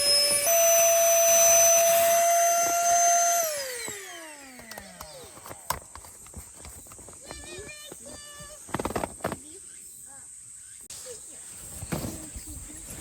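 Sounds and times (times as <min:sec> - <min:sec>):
small electric motor whining: 0:00.0 - 0:08.2.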